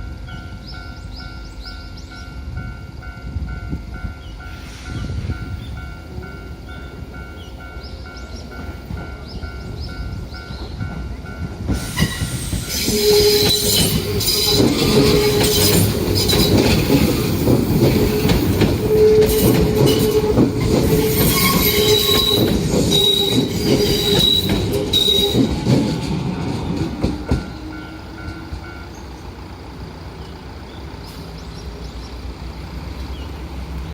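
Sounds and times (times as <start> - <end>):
train rail clatter and rumble: 0.0 - 33.9
train wheels squealing: 4.0 - 5.9, 7.4 - 29.2.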